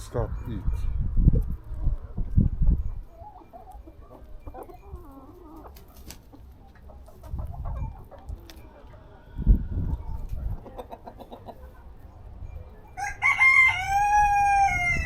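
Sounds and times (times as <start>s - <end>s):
low rumbles on microphone: 0.0s - 3.0s
chickens clucking: 0.4s - 15.0s.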